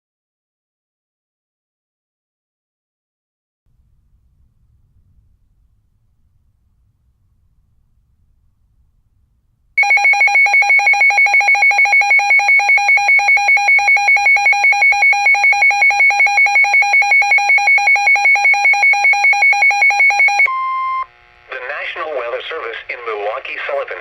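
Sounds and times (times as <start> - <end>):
high-pitched alert alarm beeping: 9.8 - 21.0.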